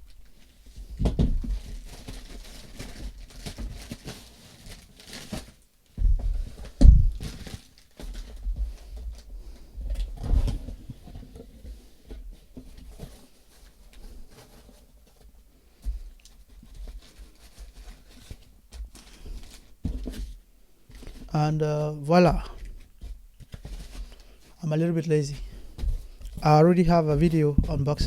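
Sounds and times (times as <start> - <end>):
packaging rustling: 1.3 - 9.3, 22.6 - 24.6.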